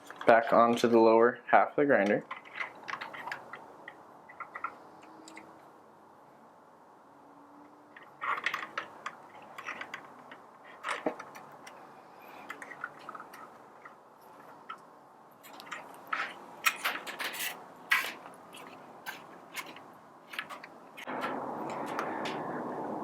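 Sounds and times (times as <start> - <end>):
plastic parts clicking and knocking: 2.0 - 5.6, 7.9 - 22.4.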